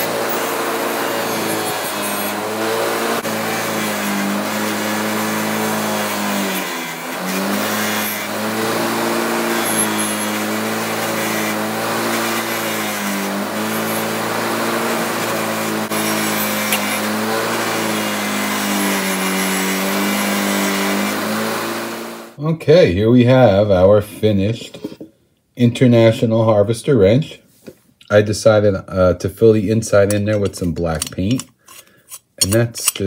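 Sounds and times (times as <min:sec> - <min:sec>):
angle grinder grinding steel: 0:00.0 - 0:22.4.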